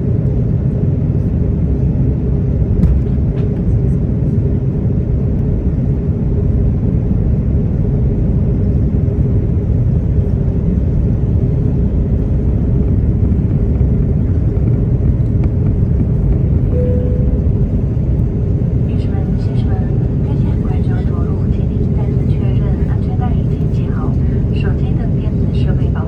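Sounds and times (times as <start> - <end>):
airliner cabin rumble: 0.0 - 26.0
steady hum: 7.3 - 26.0
short steady tone: 16.7 - 17.9.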